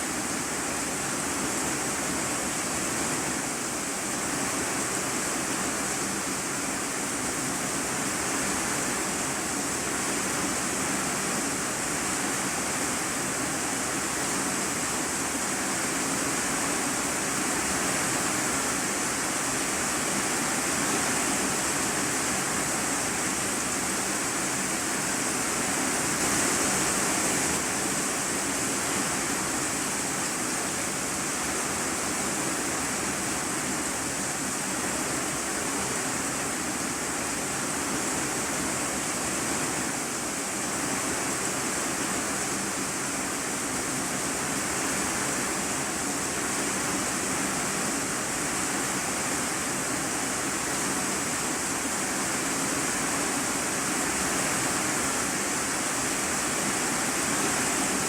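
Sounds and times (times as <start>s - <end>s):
heavy rain on a metal roof: 0.0s - 58.0s.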